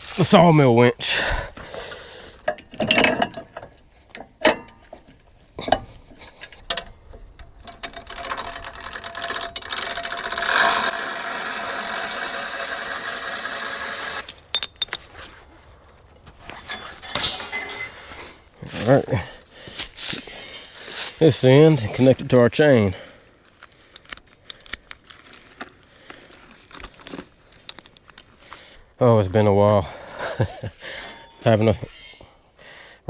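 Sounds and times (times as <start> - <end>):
winch running: 6.7 - 15.0
metallic clicks and knocks of cable: 23.6 - 25.8.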